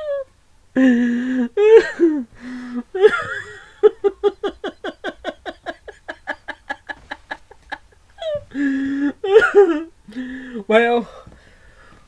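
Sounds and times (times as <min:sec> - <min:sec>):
man laughing: 0:01.6 - 0:11.0.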